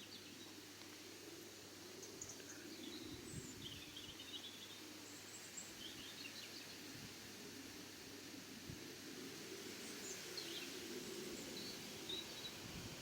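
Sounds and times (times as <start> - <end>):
small birds chirping: 0.0 - 6.9, 9.8 - 13.0.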